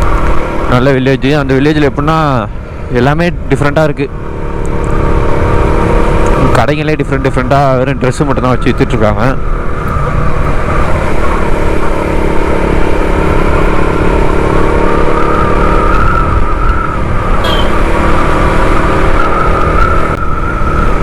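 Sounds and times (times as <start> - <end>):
wind rumble on microphone: 4.5 - 21.0
motorcycle engine running: 9.4 - 20.1
brief high tone: 17.4 - 17.8.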